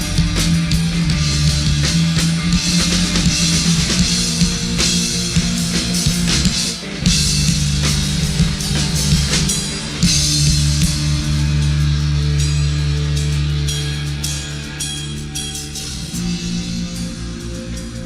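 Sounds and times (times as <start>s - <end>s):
drum hits: 0.0s - 11.6s.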